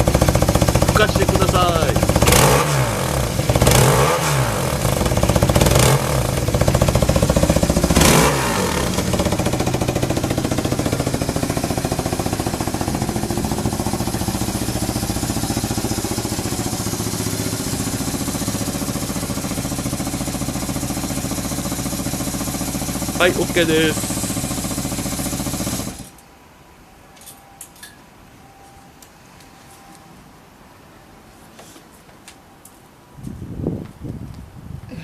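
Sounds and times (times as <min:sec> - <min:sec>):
motorcycle engine revving and idling: 0:00.0 - 0:26.1.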